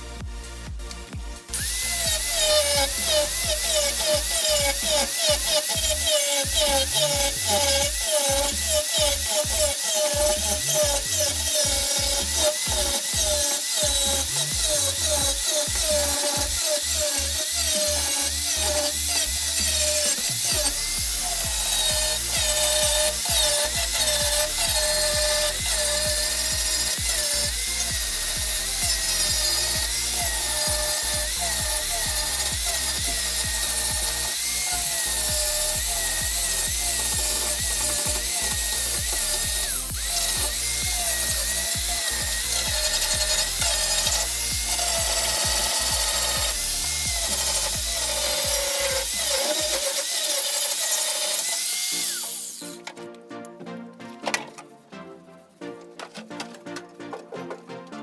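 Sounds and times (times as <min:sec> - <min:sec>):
electronic music with kick beat: 0:00.0 - 0:16.7, 0:19.3 - 0:34.6, 0:35.2 - 0:49.2
power tool whining on metal: 0:00.0 - 0:52.9.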